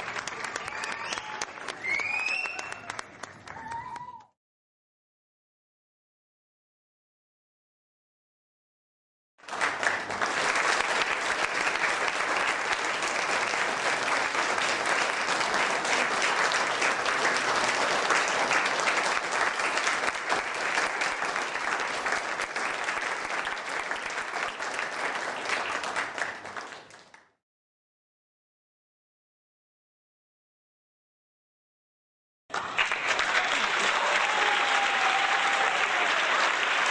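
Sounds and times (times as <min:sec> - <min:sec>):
crowd applauding: 0:00.0 - 0:04.3, 0:09.4 - 0:27.4, 0:32.5 - 0:36.9.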